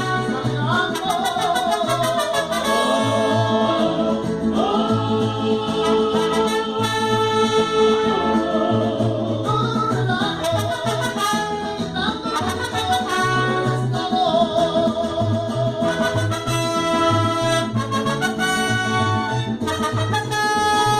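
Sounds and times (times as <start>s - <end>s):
trumpets: 0.0s - 3.9s, 5.8s - 8.7s, 10.4s - 14.0s, 15.8s - 20.9s
person singing: 0.0s - 17.7s
bass line: 0.0s - 20.9s.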